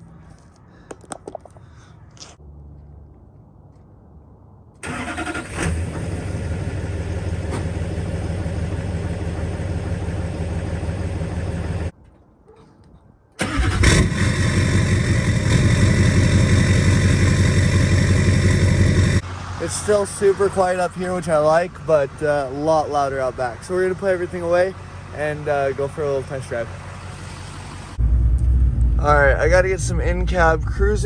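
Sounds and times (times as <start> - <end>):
diesel engine cranking and idling: 4.8 - 12.0, 13.4 - 31.0.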